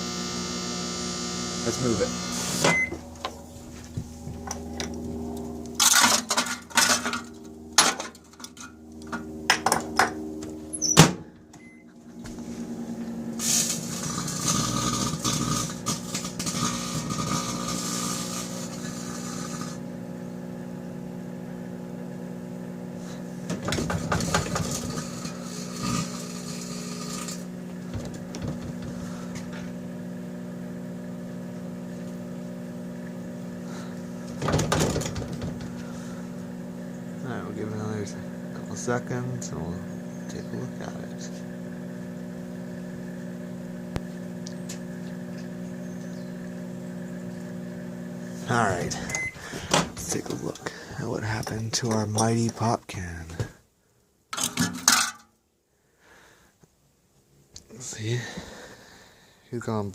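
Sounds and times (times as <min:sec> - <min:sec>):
microwave oven humming: 0:00.0 - 0:53.5
metal sparking and crackling: 0:13.4 - 0:19.8.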